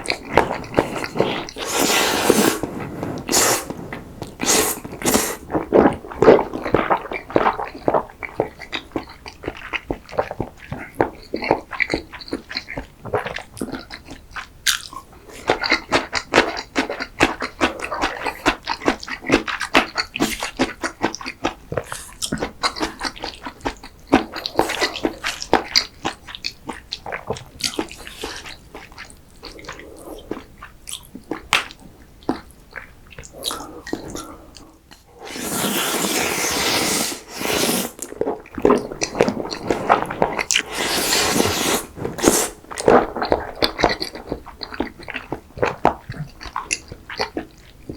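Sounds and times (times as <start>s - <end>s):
loud slurps: 0.0s - 5.6s, 33.3s - 38.2s, 39.0s - 43.0s
wet chewing and mouth clicks: 0.0s - 35.2s, 38.0s - 40.7s, 41.4s - 47.9s.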